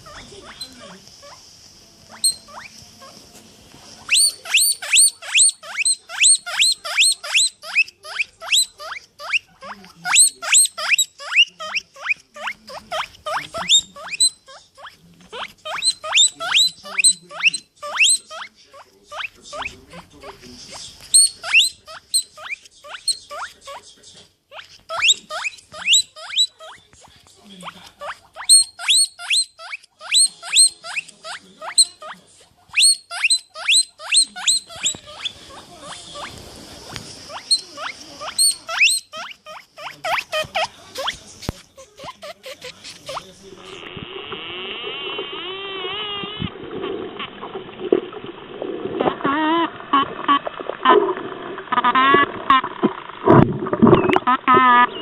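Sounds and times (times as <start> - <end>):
animal squeaking rapidly: 0.0 - 1.4, 2.1 - 3.2, 4.0 - 23.9, 24.5 - 26.9, 27.6 - 36.4, 37.3 - 46.5.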